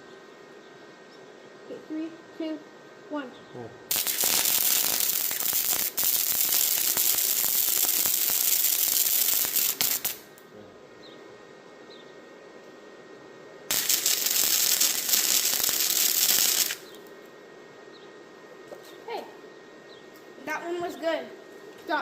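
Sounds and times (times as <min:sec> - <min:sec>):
welder arc crackling and hissing: 0:03.9 - 0:10.5, 0:13.7 - 0:17.1.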